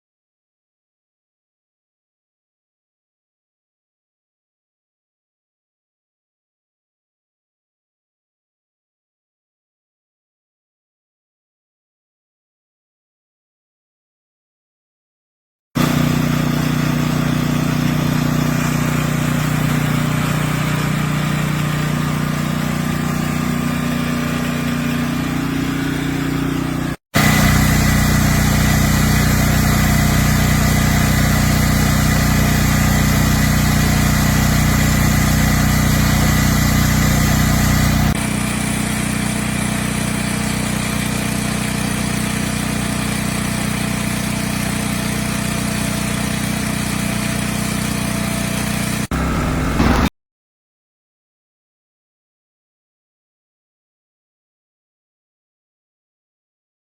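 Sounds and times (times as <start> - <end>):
generator engine running: 15.8 - 50.1.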